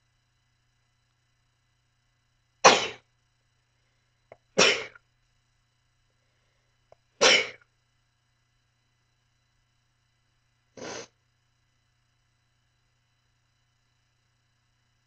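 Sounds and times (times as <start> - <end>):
person sneezing: 2.6 - 3.0, 4.6 - 5.0, 7.2 - 7.6, 10.8 - 11.1.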